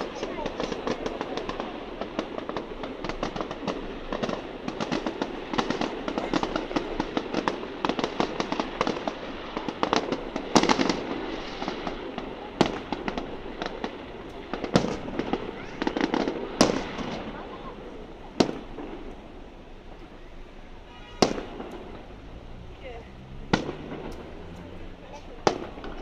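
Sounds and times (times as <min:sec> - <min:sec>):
firework bangs: 0:00.0 - 0:26.0
fireworks crackling pops: 0:00.0 - 0:26.0.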